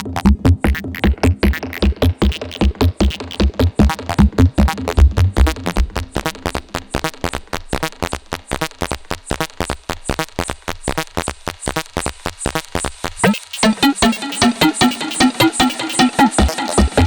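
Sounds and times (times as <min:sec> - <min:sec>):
deep synth bass notes: 0:00.0 - 0:07.2
synthesizer plucky notes: 0:00.0 - 0:07.2, 0:13.2 - 0:17.0.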